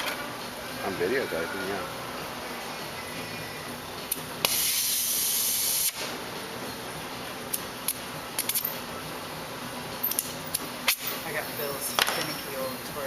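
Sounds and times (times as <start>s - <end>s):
soldering torch gas hissing: 4.4s - 6.1s.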